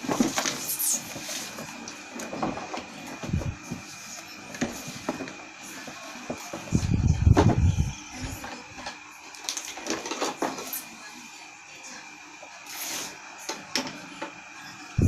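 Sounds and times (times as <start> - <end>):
parts and packaging handled: 0.0 - 3.0.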